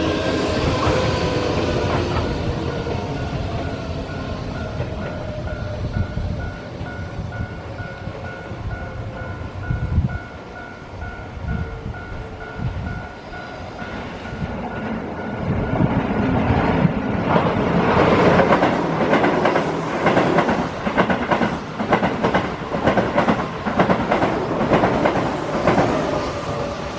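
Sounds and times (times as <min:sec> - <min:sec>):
level-crossing warning bell: 0:00.0 - 0:16.3
train wheels clattering over rail joints: 0:16.2 - 0:26.7.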